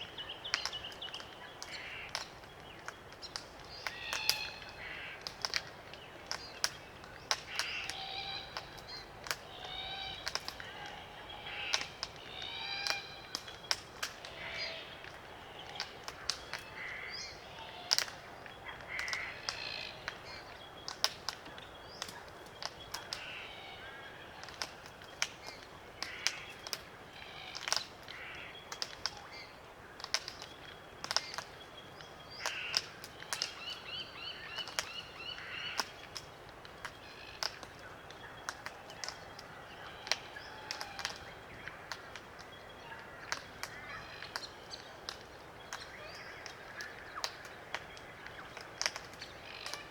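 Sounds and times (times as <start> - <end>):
cockatoos feeding clicks: 0.0 - 49.9
cockatoos soft creaking calls: 6.4 - 20.6, 32.4 - 49.9.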